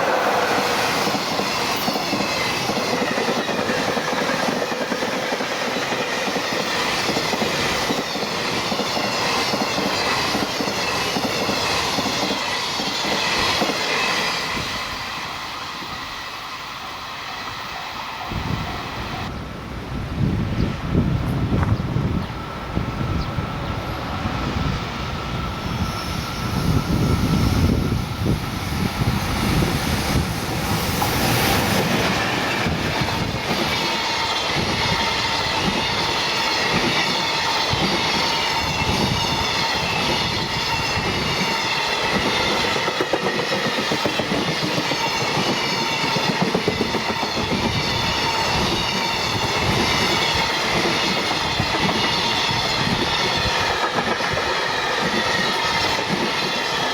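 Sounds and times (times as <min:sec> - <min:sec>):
low train rumble: 0:00.0 - 0:56.9
train wheels clattering over rail joints: 0:00.4 - 0:14.8, 0:30.2 - 0:56.9.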